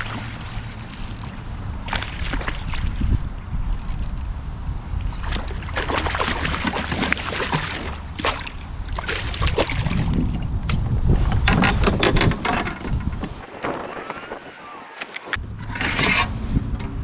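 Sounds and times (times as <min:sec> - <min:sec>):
water splashing around boat: 0:00.0 - 0:03.3, 0:05.0 - 0:12.0, 0:13.3 - 0:16.1
wind rumble on microphone: 0:00.0 - 0:17.0.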